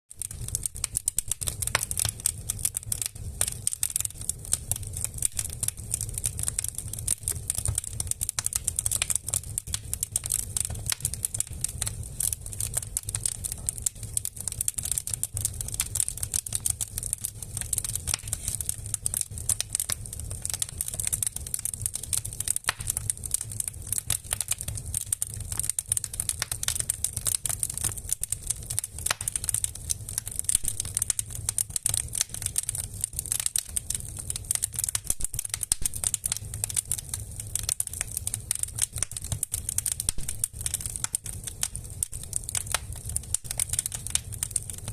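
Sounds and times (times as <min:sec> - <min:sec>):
logs crackling in fire: 0:00.1 - 0:44.9
low hum of fire draft: 0:17.6 - 0:19.2.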